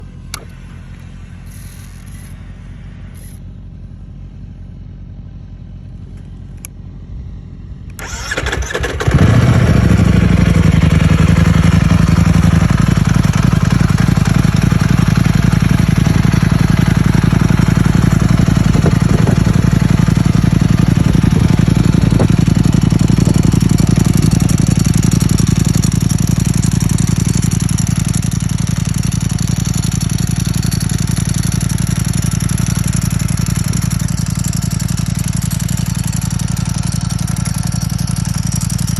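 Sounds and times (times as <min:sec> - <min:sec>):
motorcycle engine idling: 0:00.0 - 0:38.9
motorcycle starter cranking: 0:07.9 - 0:38.9.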